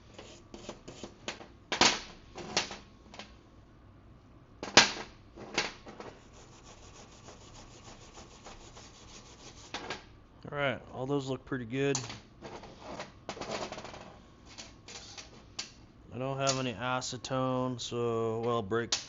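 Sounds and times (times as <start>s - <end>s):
wire brush scrubbing metal: 6.2s - 9.8s.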